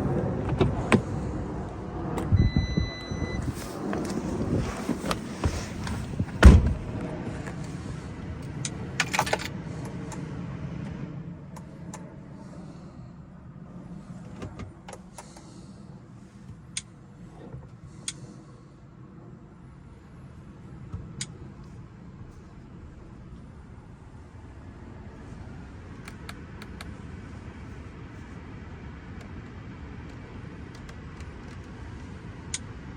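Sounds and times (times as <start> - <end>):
steady low hum: 0.0 - 32.9
car door shutting: 0.3 - 1.4, 2.2 - 7.0
sharp clicks and handling noises: 26.0 - 27.0.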